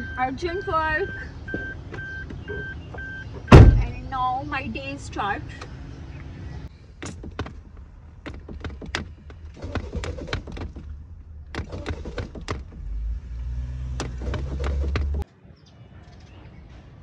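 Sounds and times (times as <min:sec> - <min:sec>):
car engine cranking: 0:06.9 - 0:15.2
sharp clicks and knocks: 0:07.0 - 0:12.9, 0:13.9 - 0:15.2.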